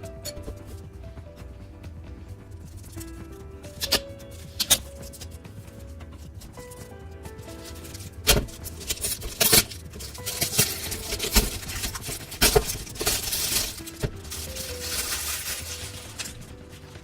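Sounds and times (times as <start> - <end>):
soft background music: 0.0 - 17.0
cardboard rustling and tearing: 7.5 - 17.0
cardboard box knocks and crackles: 8.3 - 16.6.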